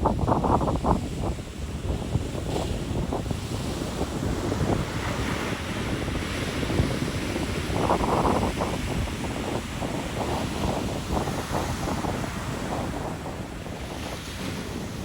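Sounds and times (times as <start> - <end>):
sea waves breaking: 0.0 - 15.0
wind buffeting microphone: 0.0 - 15.0.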